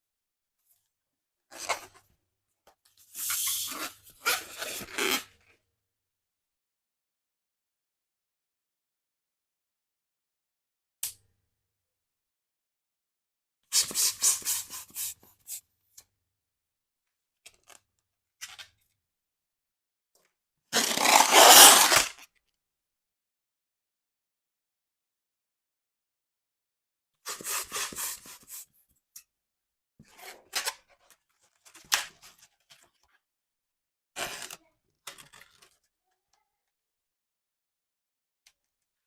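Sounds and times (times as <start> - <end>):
rubbery balloon scraping: 20.8 - 22.1.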